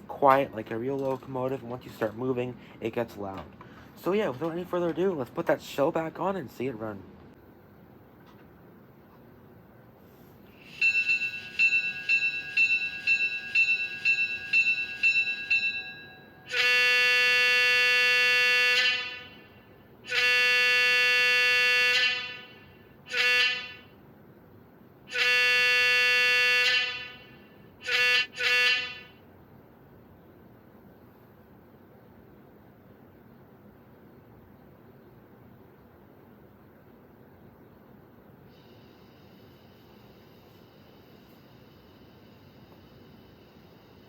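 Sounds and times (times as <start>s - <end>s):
locomotive bell ringing: 10.6s - 16.7s
locomotive horn blasts: 16.5s - 24.0s, 25.1s - 29.2s.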